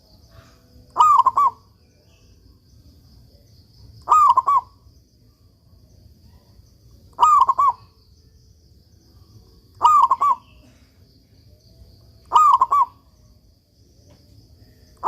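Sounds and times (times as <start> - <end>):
dove cooing: 0.3 - 1.6, 4.0 - 4.8, 7.1 - 8.0, 9.8 - 10.8, 12.3 - 13.1.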